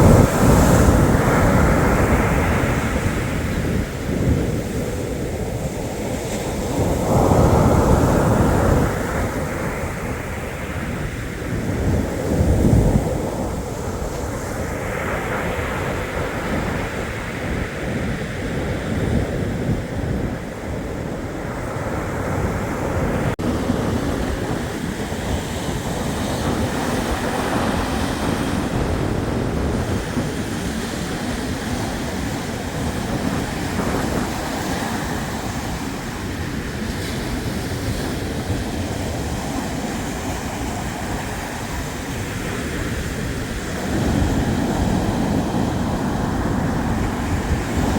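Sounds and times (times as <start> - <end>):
waves washing onto shore: 0.0 - 47.9
wind rumble on microphone: 0.0 - 47.9.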